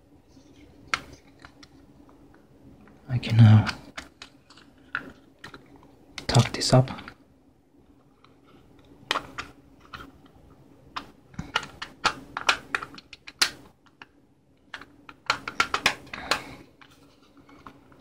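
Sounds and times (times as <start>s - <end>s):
plastic mouse parts clicking: 9.0s - 10.1s, 10.9s - 18.0s.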